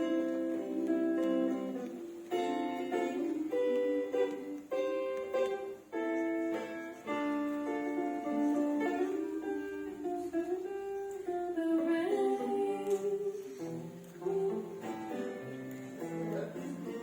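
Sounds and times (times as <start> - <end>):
person singing gliding notes: 0.0 - 5.4
acoustic guitar playing: 0.0 - 17.0.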